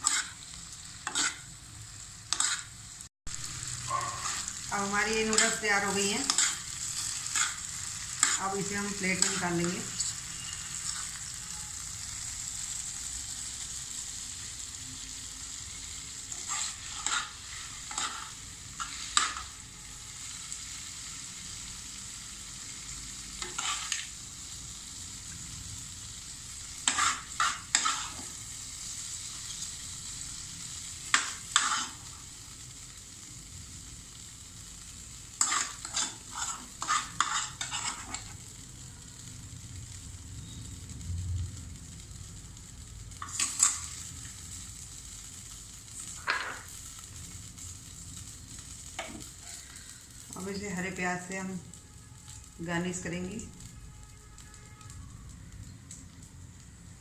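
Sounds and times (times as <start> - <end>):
utensil scraping and clinking pan: 0.0 - 0.4, 35.4 - 38.3
noodles sizzling in a pan: 0.0 - 57.0.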